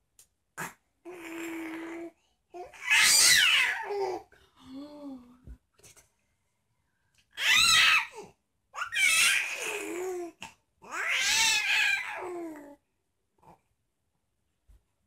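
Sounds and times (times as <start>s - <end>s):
baby squealing: 2.8s - 3.9s, 7.4s - 8.1s, 8.8s - 9.8s, 10.9s - 12.2s.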